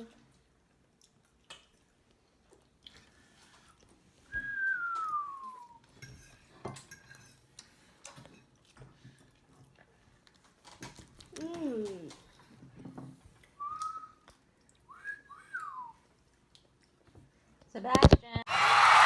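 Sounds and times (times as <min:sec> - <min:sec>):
cutlery and plates clinking: 0:05.8 - 0:09.0.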